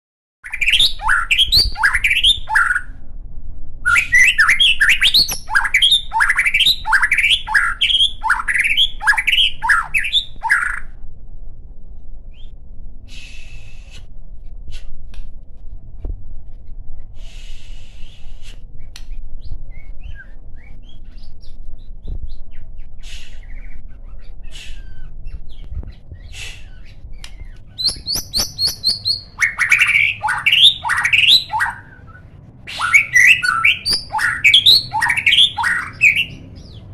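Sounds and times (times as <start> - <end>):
bird chirps and harsh calls: 0.4 - 3.0, 3.9 - 11.0, 19.4 - 36.9
songbird singing rising notes: 0.4 - 3.0, 3.9 - 11.0, 16.5 - 36.9.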